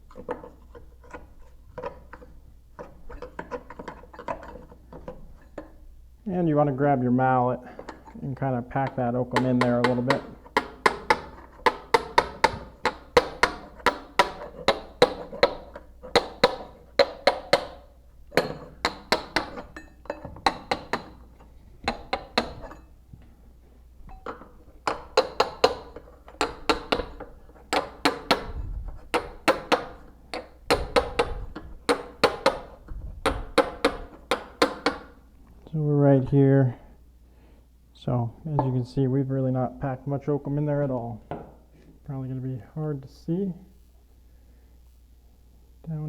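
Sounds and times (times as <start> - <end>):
mallet tapping steel chisel: 8.8 - 22.9, 24.1 - 35.2.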